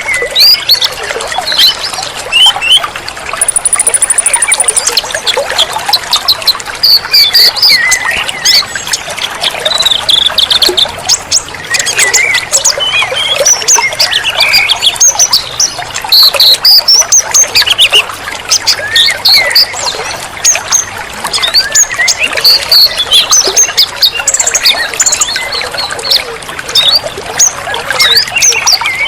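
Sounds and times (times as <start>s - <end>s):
trickling babbling water: 0.0s - 29.0s
rapid high-pitched bird trill: 3.4s - 5.0s
wild birds chirping and whistling: 6.1s - 29.0s.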